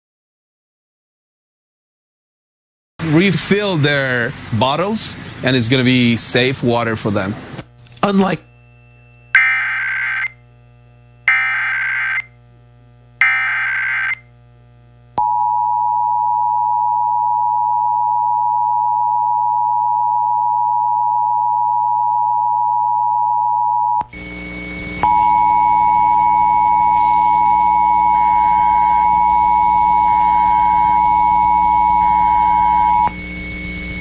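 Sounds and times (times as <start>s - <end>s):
warbling data bursts: 8.1s - 12.3s, 13.2s - 14.2s
two-tone attention signal: 8.5s - 10.4s, 11.3s - 12.3s, 13.2s - 14.2s.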